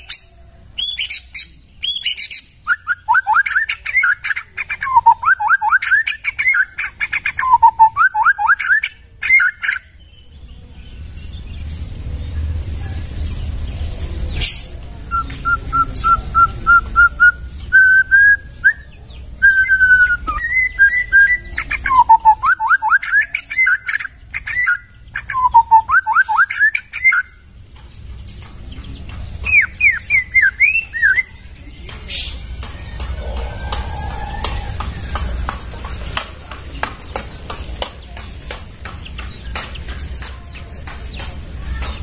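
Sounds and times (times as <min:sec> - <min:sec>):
bird singing whistled phrases: 0:00.1 - 0:10.0, 0:14.4 - 0:27.4, 0:29.4 - 0:31.4.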